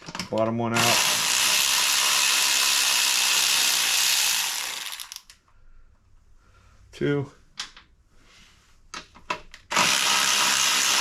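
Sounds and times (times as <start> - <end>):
power tool running: 0.8 - 5.2, 9.7 - 11.0.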